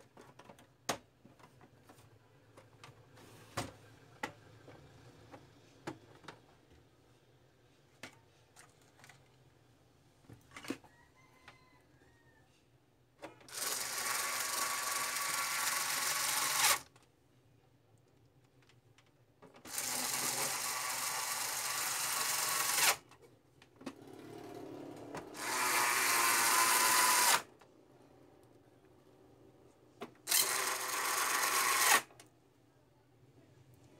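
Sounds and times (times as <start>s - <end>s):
small motor running: 19.7s - 23.0s, 25.4s - 27.4s.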